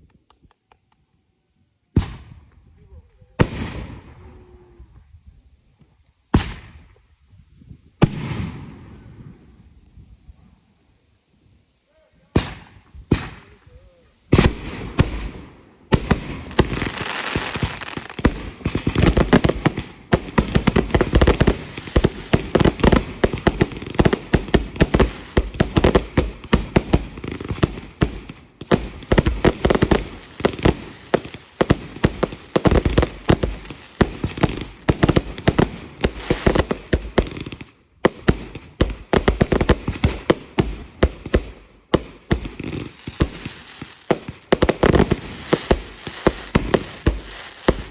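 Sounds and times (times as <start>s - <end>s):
fireworks bangs: 12.3s - 13.6s, 14.3s - 47.9s.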